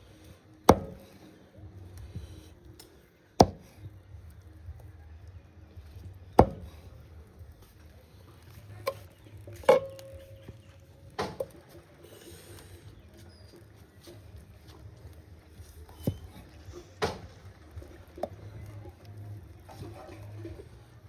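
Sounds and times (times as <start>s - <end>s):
heavy blade chopping wood: 0.7s - 1.2s, 3.4s - 3.8s, 6.3s - 6.9s, 17.0s - 17.2s.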